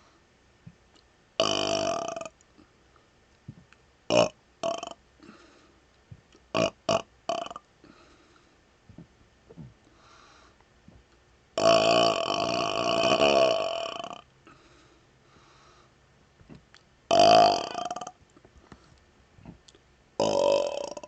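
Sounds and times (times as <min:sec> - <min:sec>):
man burping loudly: 0:01.4 - 0:02.3, 0:04.1 - 0:05.0, 0:06.6 - 0:07.6, 0:11.6 - 0:14.2, 0:17.1 - 0:18.2, 0:20.2 - 0:21.0.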